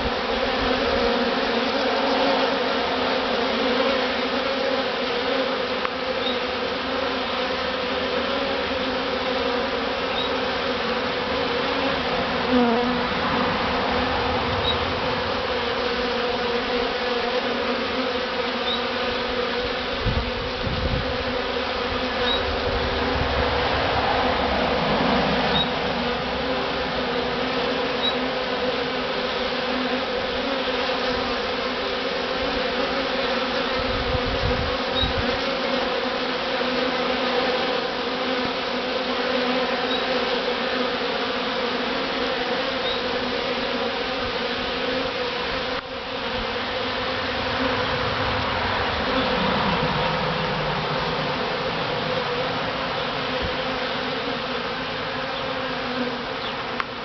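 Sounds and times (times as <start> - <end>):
bee swarm buzzing: 0.0 - 57.0.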